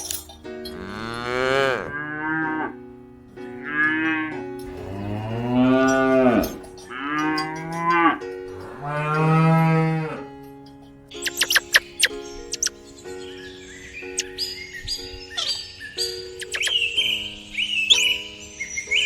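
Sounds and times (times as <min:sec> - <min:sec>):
cattle mooing: 0:00.7 - 0:02.8, 0:03.6 - 0:10.3.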